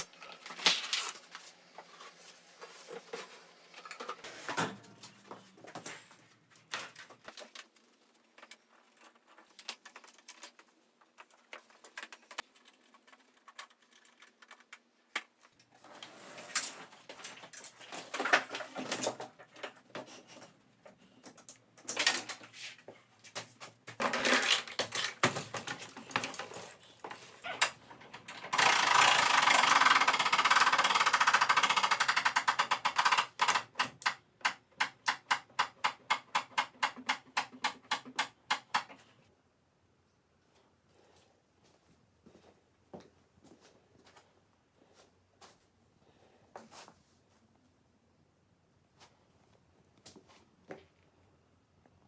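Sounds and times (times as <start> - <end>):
wood and tools clattering: 0.1 - 39.1.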